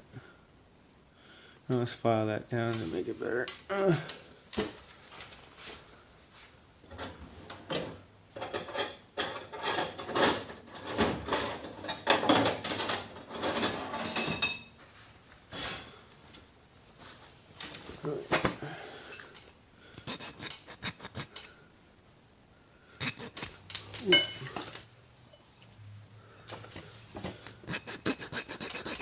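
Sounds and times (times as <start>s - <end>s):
hand file rasping: 20.0s - 21.5s, 23.0s - 24.2s, 27.6s - 29.0s.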